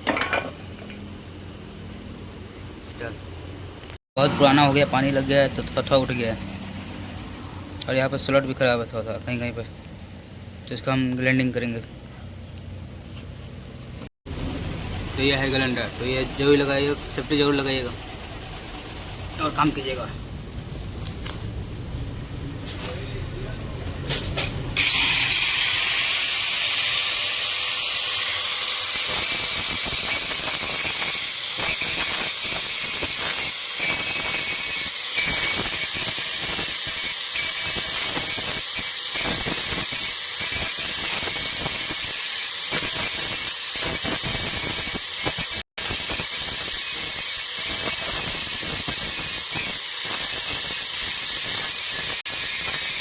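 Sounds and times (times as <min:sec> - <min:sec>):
angle grinder grinding metal: 0:14.3 - 0:20.1, 0:24.8 - 0:53.0.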